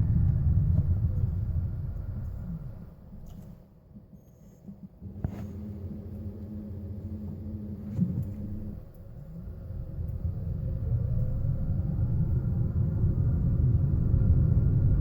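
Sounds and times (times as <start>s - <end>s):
car tyres rumbling on road: 0.0s - 15.0s
faint rising whine: 4.6s - 15.0s.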